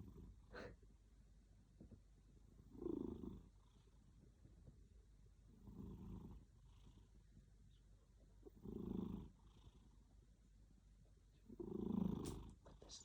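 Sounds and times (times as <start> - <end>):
cat snoring: 2.6 - 4.0, 5.5 - 7.1, 8.5 - 10.0, 11.5 - 12.6.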